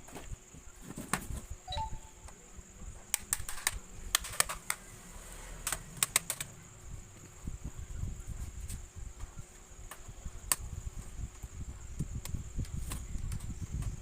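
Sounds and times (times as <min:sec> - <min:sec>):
plastic case clicks and snaps: 0:05.7 - 0:06.5.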